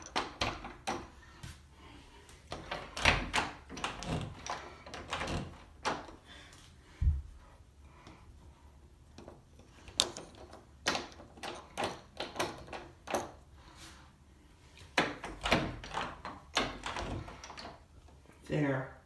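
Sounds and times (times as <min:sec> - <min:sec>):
door knob rattling and clicking: 0:00.0 - 0:01.2, 0:02.5 - 0:06.2, 0:09.1 - 0:13.4, 0:15.0 - 0:18.2.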